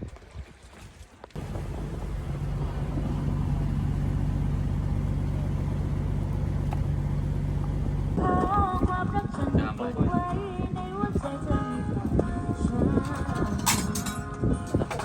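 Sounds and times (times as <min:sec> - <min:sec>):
boat diesel engine humming: 0:01.4 - 0:08.9.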